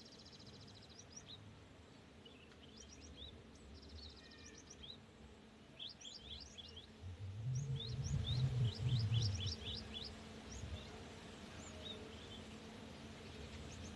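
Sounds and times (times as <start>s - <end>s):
bird singing whistled notes: 5.8s - 10.9s
low rumble: 6.8s - 10.9s.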